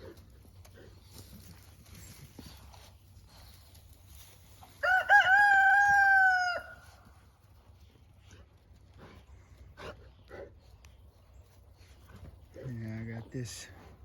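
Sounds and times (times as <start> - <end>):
rooster crowing: 4.8 - 7.0.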